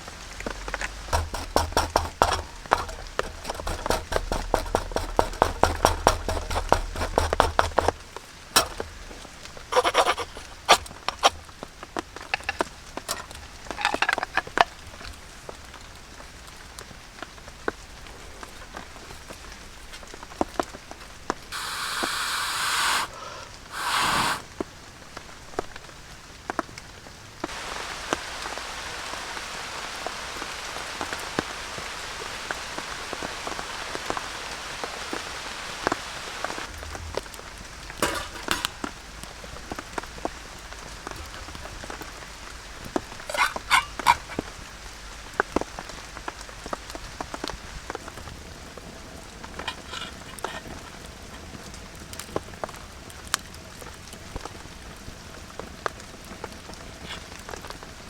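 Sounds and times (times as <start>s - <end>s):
rain falling: 24.8s - 43.4s, 44.0s - 58.0s.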